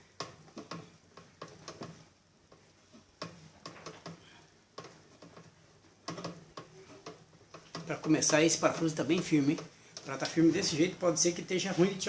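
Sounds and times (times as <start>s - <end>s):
wrench clicking and knocking on metal: 3.2s - 10.4s.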